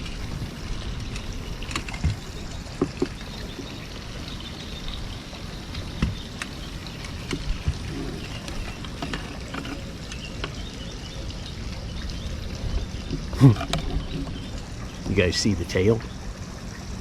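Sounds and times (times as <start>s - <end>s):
wind rumble on microphone: 0.0s - 15.3s
light knocks and clicks: 6.0s - 10.6s.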